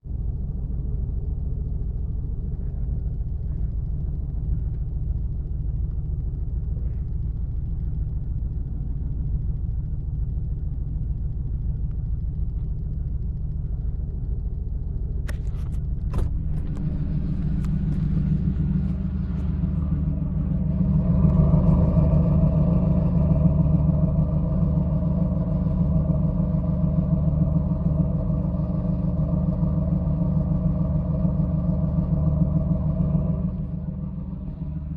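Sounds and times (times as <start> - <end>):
misfiring car engine drone: 0.1 - 34.9.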